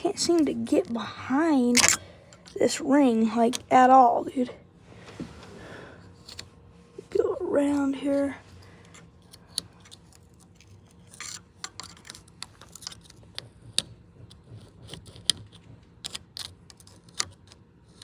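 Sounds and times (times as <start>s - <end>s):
metal pick scraping and clicking: 1.6s - 2.7s, 6.2s - 6.5s, 8.1s - 18.0s.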